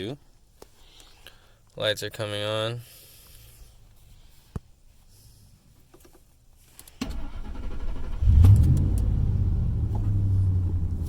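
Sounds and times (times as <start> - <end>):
engine running with low rumble: 7.8 - 11.0.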